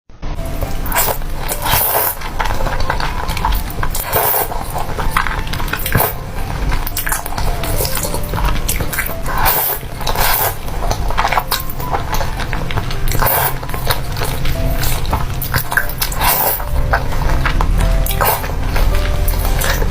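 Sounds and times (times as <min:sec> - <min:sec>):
noodles being slurped: 0:00.8 - 0:19.9.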